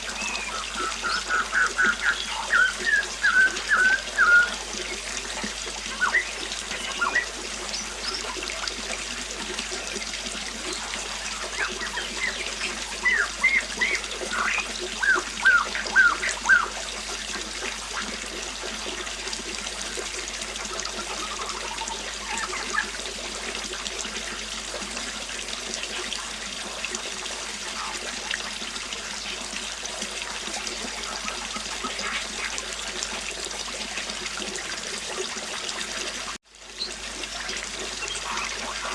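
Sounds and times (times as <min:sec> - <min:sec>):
small birds chirping: 0:00.0 - 0:08.6, 0:09.8 - 0:16.8, 0:21.0 - 0:23.0, 0:37.9 - 0:38.9
river water flowing: 0:00.0 - 0:38.9.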